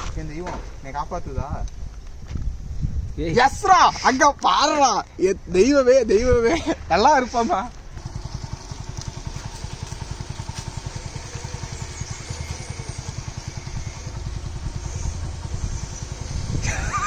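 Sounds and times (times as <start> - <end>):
motorcycle engine running: 7.9 - 17.0.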